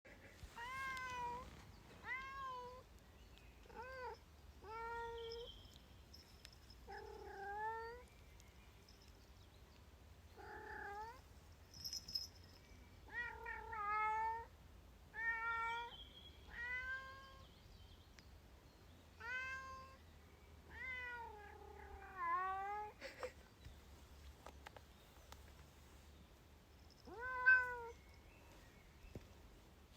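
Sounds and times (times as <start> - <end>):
cat meowing: 0.6 - 2.8, 19.2 - 20.0, 27.1 - 28.0.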